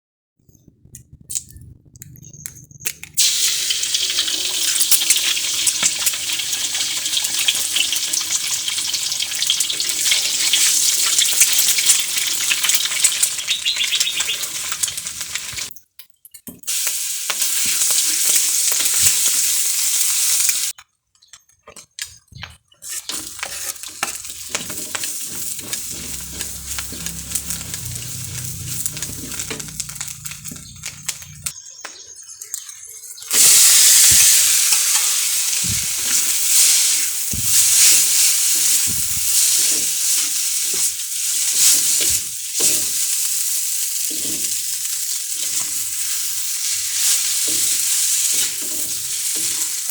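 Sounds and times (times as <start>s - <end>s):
food sizzling in hot oil: 3.2s - 15.7s, 16.6s - 20.8s, 22.8s - 49.9s.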